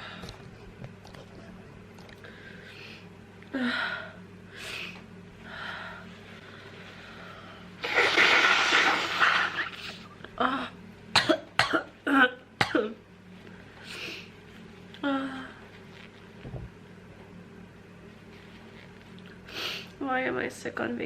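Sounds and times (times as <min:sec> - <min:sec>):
woman breathing heavily: 0:02.2 - 0:07.8
woman coughing: 0:11.1 - 0:13.0.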